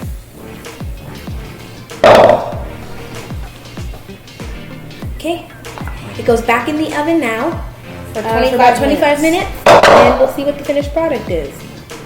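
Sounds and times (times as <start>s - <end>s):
electronic music: 0.0s - 12.0s
deep kick drum: 0.8s - 5.3s.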